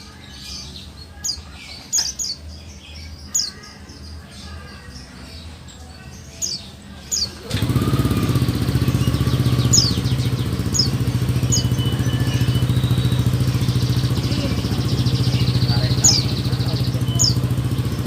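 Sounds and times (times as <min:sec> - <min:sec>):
bird chirps: 0:06.0 - 0:18.0
engine running steadily: 0:07.1 - 0:18.0.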